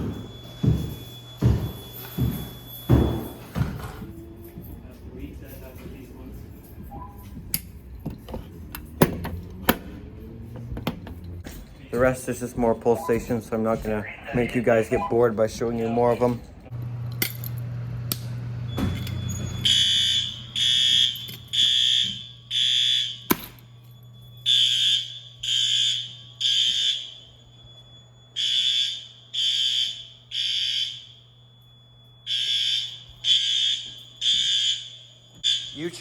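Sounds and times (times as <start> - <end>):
fire alarm horn blasts: 0.0 - 4.9, 12.7 - 16.9, 18.6 - 36.0.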